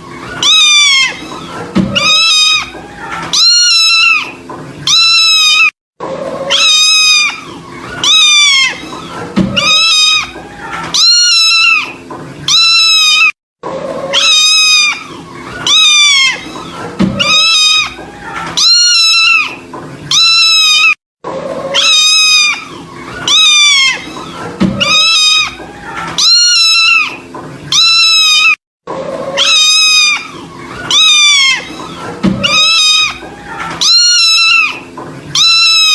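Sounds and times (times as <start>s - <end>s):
kitten meowing: 0.4s - 1.2s, 2.0s - 2.7s, 3.3s - 4.3s, 4.9s - 5.7s, 6.5s - 8.9s, 9.6s - 10.3s, 11.0s - 13.4s, 14.1s - 15.1s, 15.7s - 16.5s, 17.2s - 18.0s, 18.6s - 21.0s, 21.7s - 22.7s, 23.3s - 24.1s, 24.8s - 25.6s, 26.2s - 28.6s, 29.4s - 31.7s, 32.4s - 33.2s, 33.8s - 34.8s, 35.4s - 35.9s.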